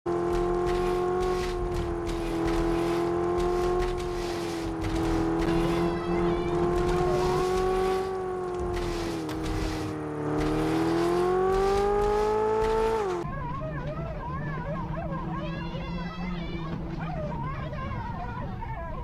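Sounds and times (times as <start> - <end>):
car engine at high revs: 0.0 - 13.2.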